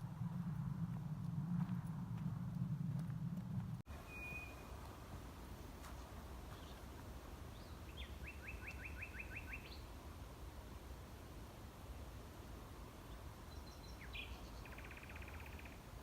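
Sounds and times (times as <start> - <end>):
low rumble: 0.0 - 3.9
nightingale singing: 3.9 - 4.8, 7.5 - 9.9, 13.5 - 15.9.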